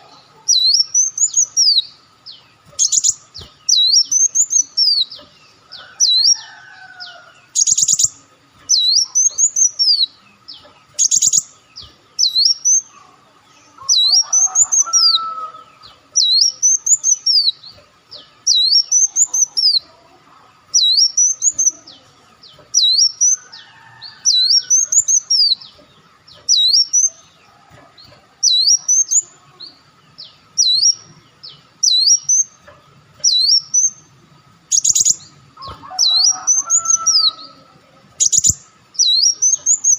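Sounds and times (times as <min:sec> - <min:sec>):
lower warbled bird phrases: 0:00.0 - 0:39.9
high whistled bird song: 0:00.5 - 0:05.1, 0:05.8 - 0:12.9, 0:30.2 - 0:31.0, 0:31.8 - 0:32.6, 0:33.2 - 0:34.0, 0:34.7 - 0:37.6, 0:38.2 - 0:39.9.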